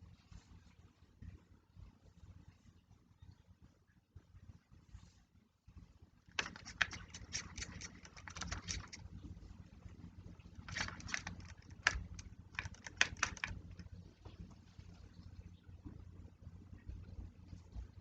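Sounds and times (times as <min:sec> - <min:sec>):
steady low hum: 0:00.0 - 0:18.0
paintbrush scratching on paper: 0:06.4 - 0:09.0.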